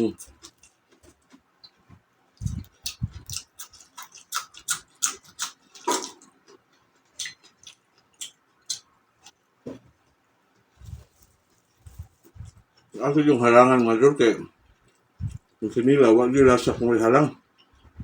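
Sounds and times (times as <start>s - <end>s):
person chewing and smacking: 0.0s - 9.4s.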